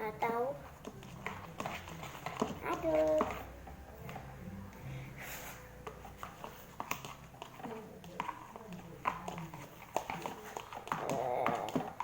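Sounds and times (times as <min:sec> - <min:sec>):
slime stirred with wet clicks: 0:05.8 - 0:12.0.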